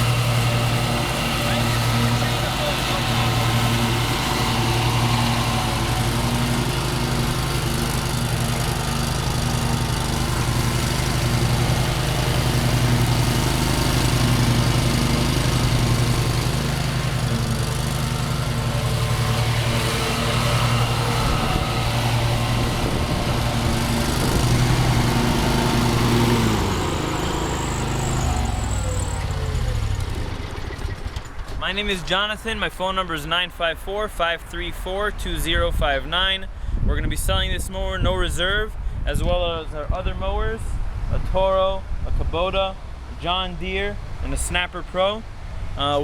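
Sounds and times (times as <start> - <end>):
mower engine running: 0.0 - 32.2.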